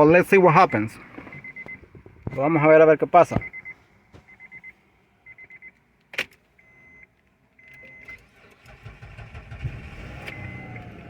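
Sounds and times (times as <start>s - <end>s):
short electronic beeps: 0.6s - 1.9s, 3.4s - 5.8s, 6.6s - 8.2s, 10.2s - 10.8s
car engine cranking and starting: 7.6s - 11.0s.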